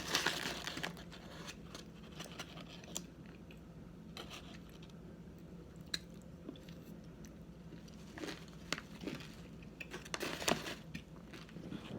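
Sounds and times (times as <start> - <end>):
person chewing dry starch: 4.4 - 11.9.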